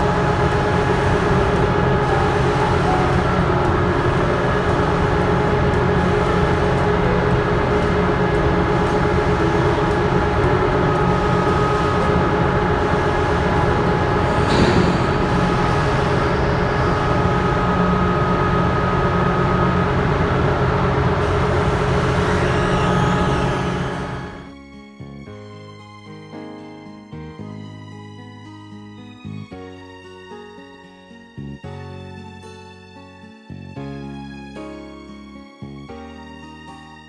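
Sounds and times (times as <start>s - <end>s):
vehicle engine drone: 0.0s - 24.5s.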